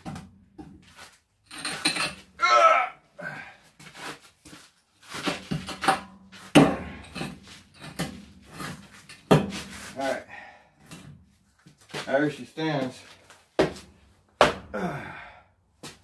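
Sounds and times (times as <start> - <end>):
metal stand scraping and knocking: 1.5 - 2.3, 5.1 - 10.0
man groaning: 2.4 - 3.6, 14.7 - 15.4.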